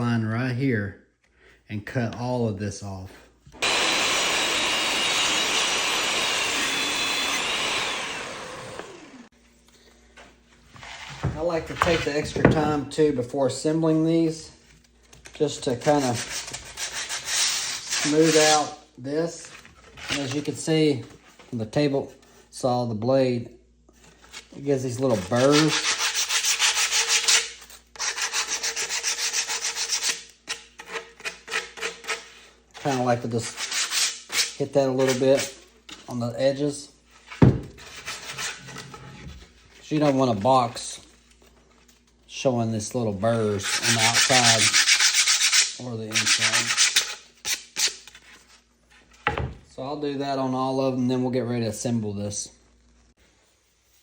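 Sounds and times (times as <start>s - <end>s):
table saw winding down: 3.6s - 9.3s
sandpaper rubbing wood: 15.7s - 18.8s, 24.9s - 30.3s, 32.9s - 35.6s, 43.4s - 48.0s.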